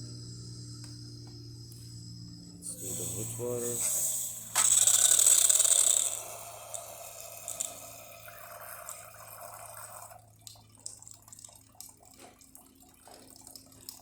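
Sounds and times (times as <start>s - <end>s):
espresso machine hissing: 0.0s - 10.1s
water running and dripping: 6.2s - 14.0s.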